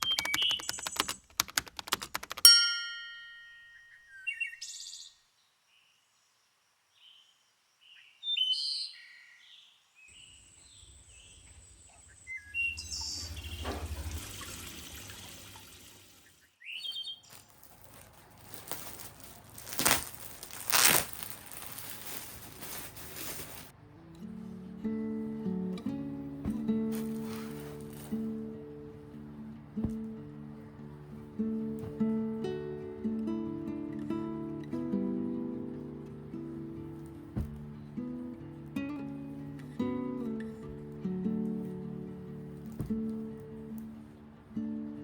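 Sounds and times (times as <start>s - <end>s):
birds chirping: 0.0s - 1.3s, 7.0s - 19.0s
quick clicks: 0.0s - 2.5s
loud ringing ding: 2.5s - 4.1s.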